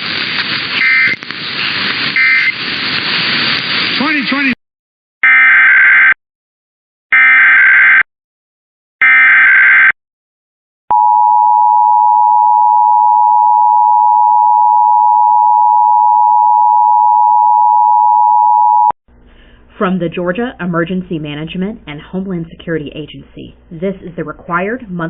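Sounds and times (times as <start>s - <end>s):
warbling data bursts: 0.8s - 2.7s.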